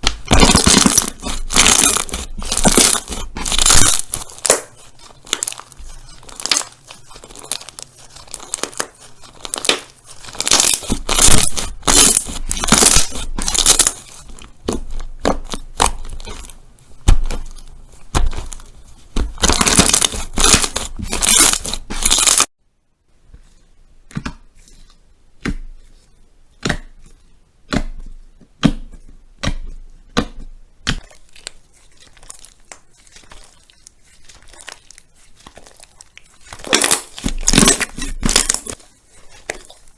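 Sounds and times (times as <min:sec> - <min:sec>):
slime crackling and popping: 0:00.0 - 0:22.5, 0:30.8 - 0:39.9.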